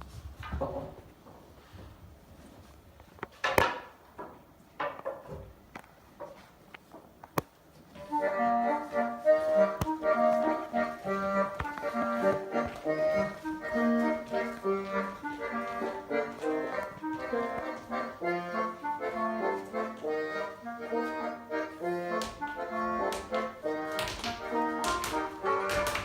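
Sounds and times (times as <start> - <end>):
instrumental music: 7.9 - 26.0
sharp taps: 22.1 - 26.0.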